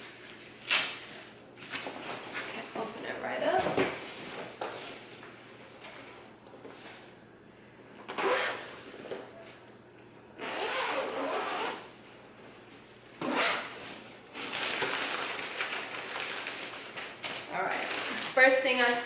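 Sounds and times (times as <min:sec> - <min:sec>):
zipper of fabric bag pulled open: 0:08.1 - 0:08.7, 0:10.4 - 0:11.8.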